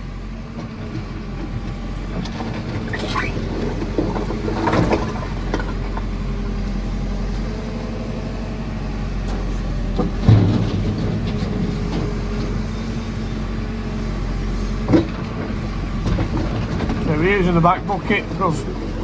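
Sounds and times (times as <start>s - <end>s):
diesel engine running: 0.0s - 19.0s
heavy clunk: 9.2s - 13.2s, 14.6s - 19.0s.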